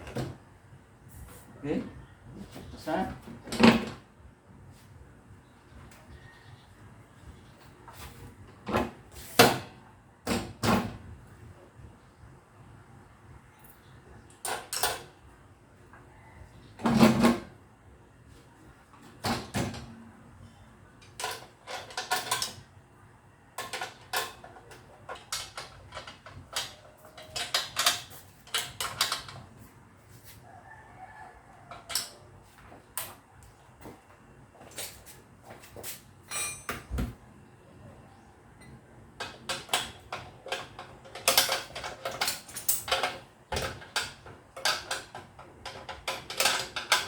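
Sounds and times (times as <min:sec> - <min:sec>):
metal tools clinking and knocking: 0:23.6 - 0:29.4, 0:36.2 - 0:36.9, 0:39.2 - 0:47.0.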